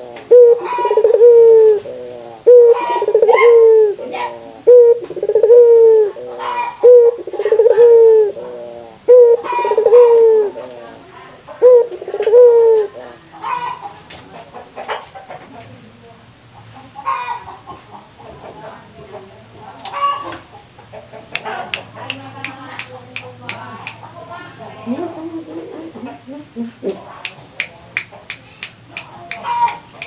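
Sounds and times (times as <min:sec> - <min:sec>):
dove cooing: 0:00.0 - 0:13.9, 0:24.7 - 0:27.1.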